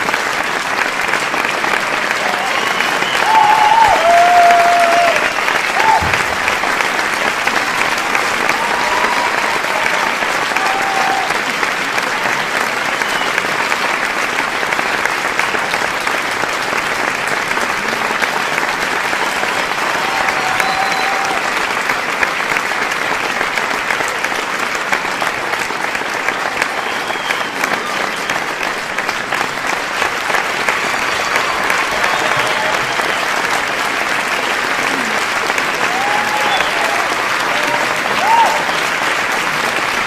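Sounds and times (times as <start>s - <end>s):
audience applauding: 0.0s - 40.0s
short cheers: 2.0s - 6.6s, 7.8s - 13.5s, 19.2s - 21.7s, 30.6s - 39.2s.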